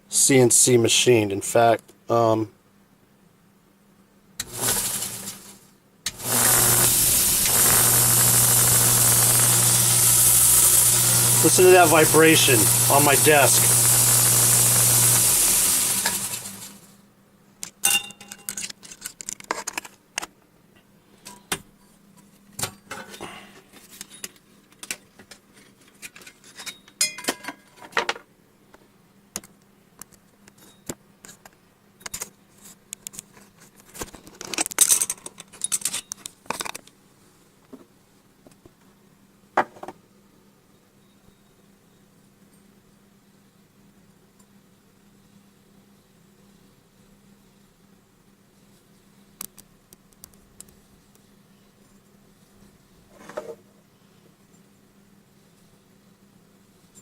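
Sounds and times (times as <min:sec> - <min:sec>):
grinder motor winding down: 0:06.1 - 0:16.8
metal parts clinking on desk: 0:34.8 - 0:36.2.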